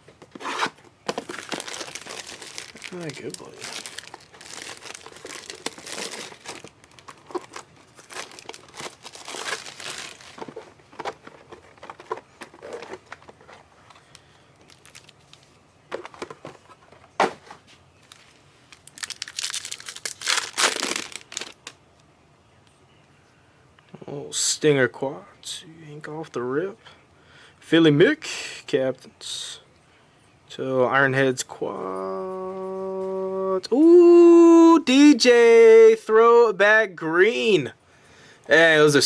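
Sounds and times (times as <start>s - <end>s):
plastic wrappers tearing and crinkling: 0.3s - 16.4s, 18.0s - 21.8s.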